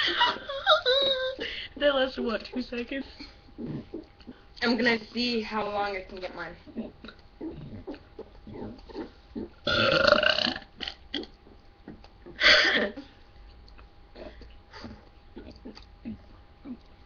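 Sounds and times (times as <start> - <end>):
person burping: 9.6 - 11.2.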